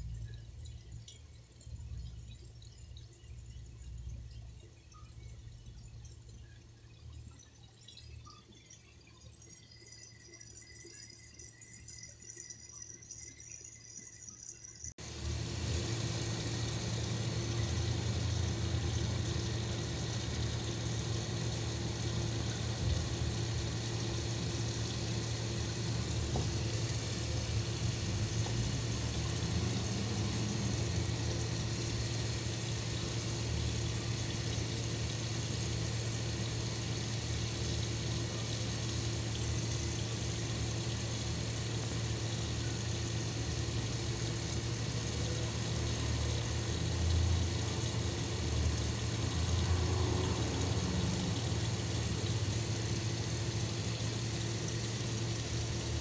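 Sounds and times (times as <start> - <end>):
running water rushing: 15.0 - 56.0.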